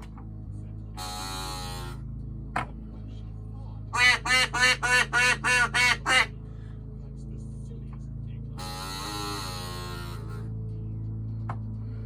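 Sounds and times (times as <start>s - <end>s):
low electrical hum: 0.0s - 12.0s
duck quacking: 4.0s - 6.3s.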